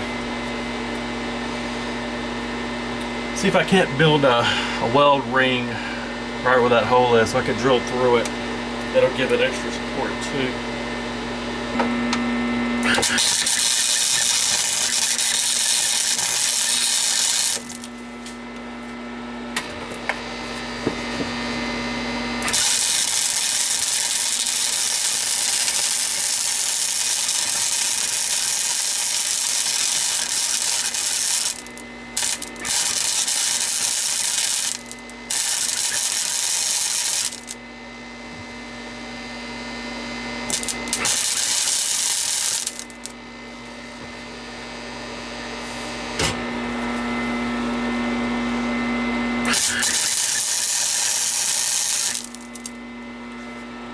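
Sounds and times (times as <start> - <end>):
welder humming: 0.0 - 44.3, 45.5 - 53.6
welding arc crackling: 12.9 - 18.0, 22.4 - 37.6, 40.5 - 43.2, 49.5 - 52.8.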